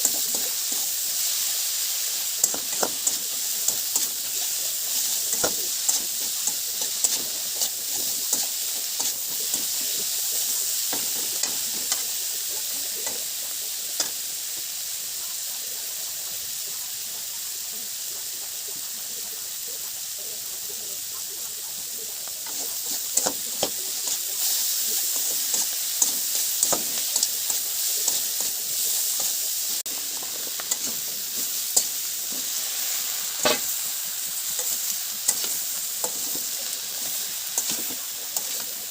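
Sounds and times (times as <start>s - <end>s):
food sizzling in oil: 0.0s - 38.9s
spatula scraping a pan: 2.4s - 13.3s, 22.3s - 38.9s.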